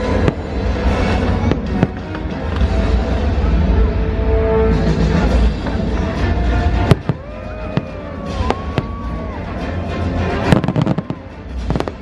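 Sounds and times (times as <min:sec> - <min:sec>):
fireworks bangs: 0:00.0 - 0:02.7, 0:06.8 - 0:09.2, 0:10.4 - 0:12.0
orchestral music: 0:00.0 - 0:12.0.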